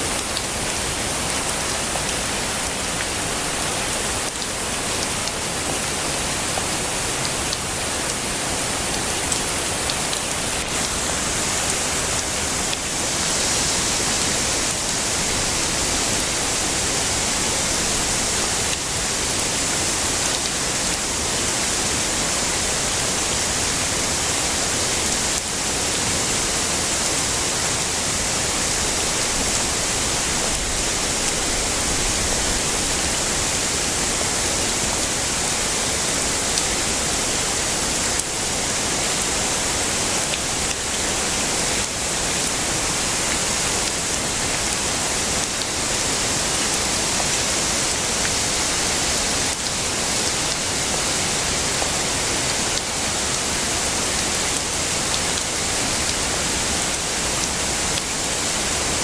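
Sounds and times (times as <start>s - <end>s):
heavy rain hissing: 0.0s - 59.0s.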